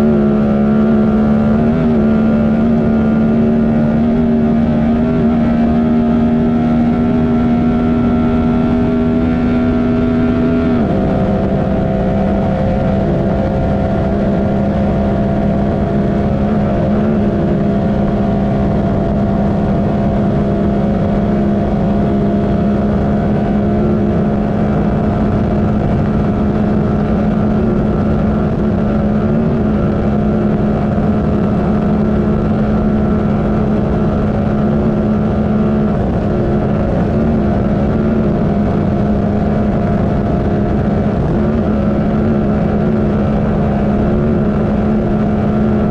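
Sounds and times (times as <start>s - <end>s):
engine running at speed: 0.0s - 45.9s
wheel and wind noise: 0.0s - 45.9s.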